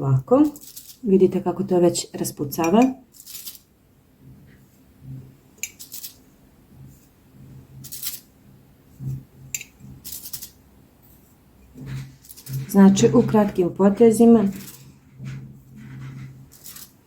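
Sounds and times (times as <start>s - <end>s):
paintbrush scratching on glass: 11.7s - 17.0s.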